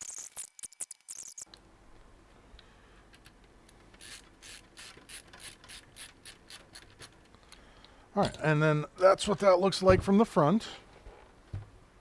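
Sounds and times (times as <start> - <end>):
zip tie ratcheting clicks: 0.0 - 1.5.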